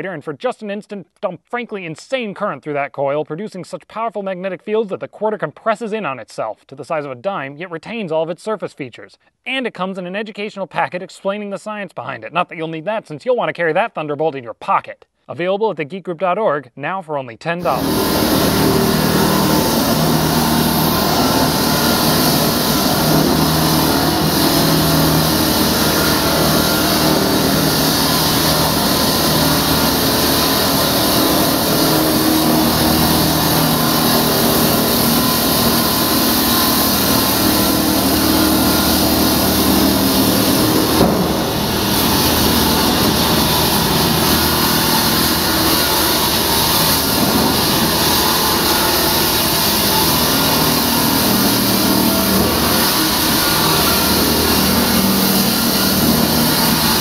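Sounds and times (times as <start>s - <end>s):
concrete-cutting saw running: 17.6s - 57.0s.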